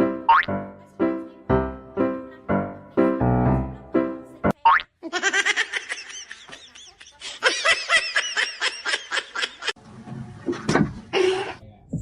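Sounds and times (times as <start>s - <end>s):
person giggling: 5.0s - 9.8s.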